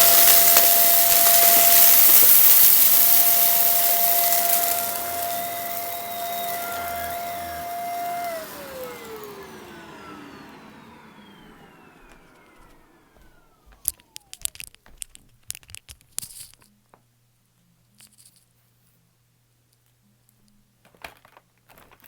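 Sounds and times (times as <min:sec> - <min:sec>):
vacuum cleaner winding down: 0:00.0 - 0:14.4.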